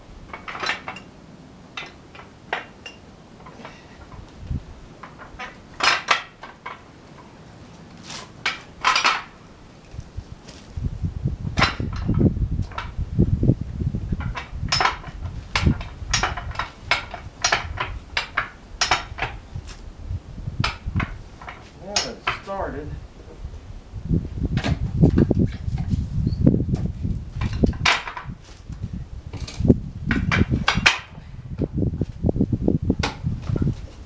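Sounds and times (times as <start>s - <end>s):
metal clanking and clinking: 0.3s - 1.1s, 1.8s - 4.3s, 5.0s - 7.5s, 8.1s - 10.0s, 11.6s - 13.0s, 14.2s - 19.8s, 20.6s - 22.9s, 24.6s - 28.6s, 29.3s - 31.2s.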